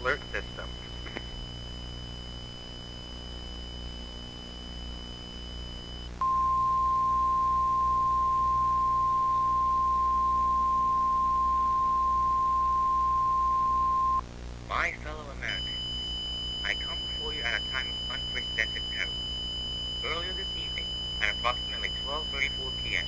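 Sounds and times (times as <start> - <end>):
low hum: 0.1 - 14.2
loud steady test tone: 2.6 - 14.2, 14.8 - 23.0.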